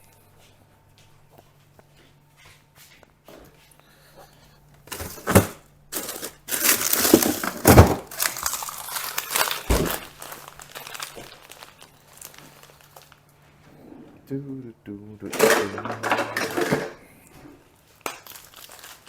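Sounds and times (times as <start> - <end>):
packaging crinkling and rustling: 4.9 - 13.4, 17.8 - 19.0.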